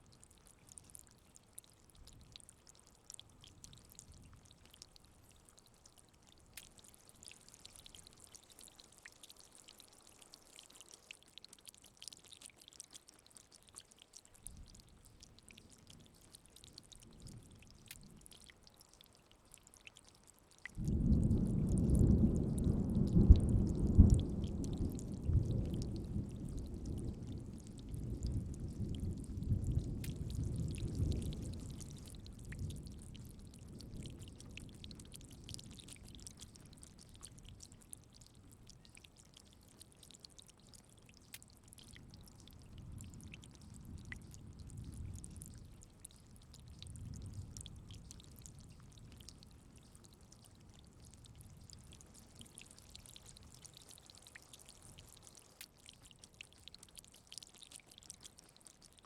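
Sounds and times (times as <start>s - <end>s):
steady rain pattering: 0.0s - 59.0s
low rolling thunder: 20.8s - 34.3s.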